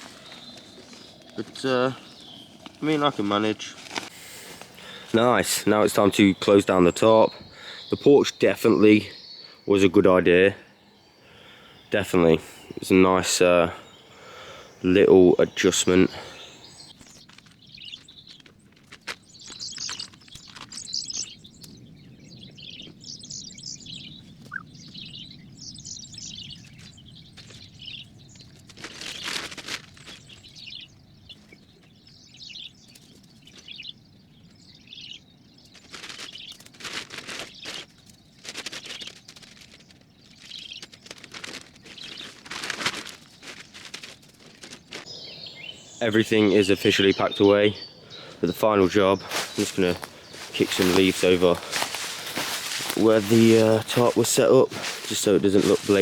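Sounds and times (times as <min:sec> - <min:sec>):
rustling and handling noise: 0:00.0 - 0:06.7, 0:12.0 - 0:21.8, 0:26.8 - 0:30.6, 0:35.5 - 0:56.0
small birds chirping: 0:00.0 - 0:56.0.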